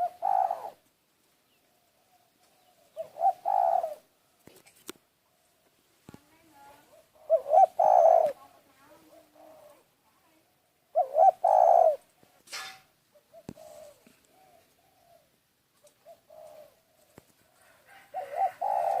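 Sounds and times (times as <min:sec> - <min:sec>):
dove cooing: 0:00.0 - 0:00.9, 0:01.5 - 0:04.6, 0:06.4 - 0:12.4, 0:13.1 - 0:19.0
brief rustle: 0:04.4 - 0:05.0.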